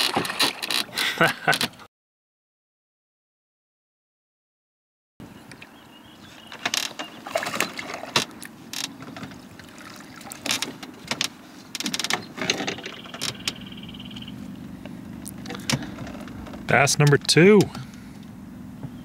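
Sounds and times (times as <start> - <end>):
boat gear knocking and rattling: 0.0 - 1.9, 6.4 - 19.0
steady low hum: 7.2 - 19.0.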